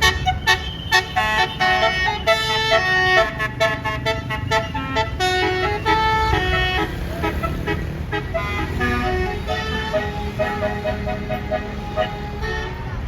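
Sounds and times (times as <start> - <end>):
engine and traffic rumble: 0.0 - 13.0
multi-trumpet air horn tune: 0.0 - 13.0.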